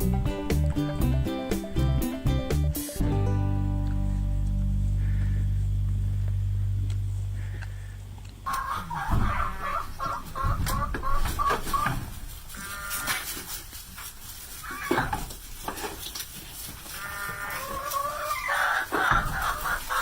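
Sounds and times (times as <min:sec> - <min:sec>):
steady low hum: 0:03.1 - 0:20.0
chicken clucking: 0:08.4 - 0:20.0.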